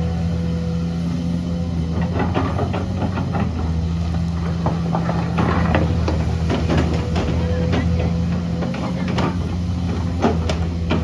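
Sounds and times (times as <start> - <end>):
metallic clanks and knocks: 4.4 - 11.0.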